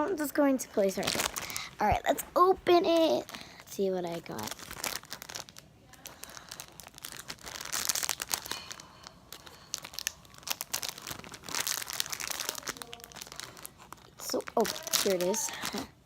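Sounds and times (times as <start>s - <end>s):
packaging bag crinkling: 0.8s - 16.0s.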